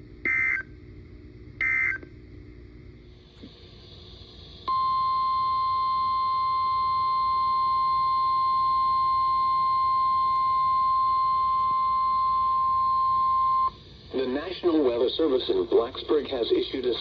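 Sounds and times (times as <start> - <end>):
faint radio hiss: 14.0 - 17.0.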